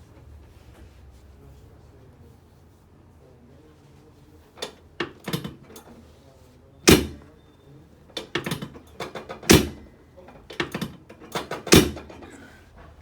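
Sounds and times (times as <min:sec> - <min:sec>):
sharp knocks and clunks: 0:06.9 - 0:07.3, 0:08.2 - 0:09.9, 0:10.5 - 0:13.0.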